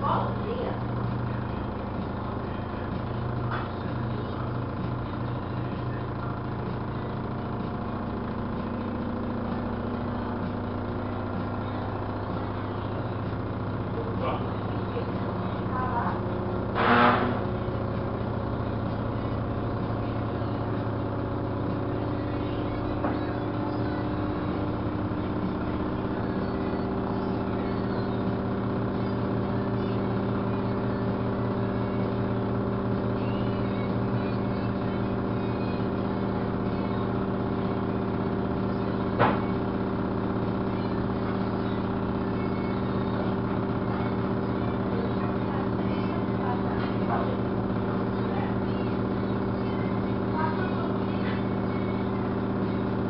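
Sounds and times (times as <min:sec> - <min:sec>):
washing machine spinning: 0:00.0 - 0:53.0.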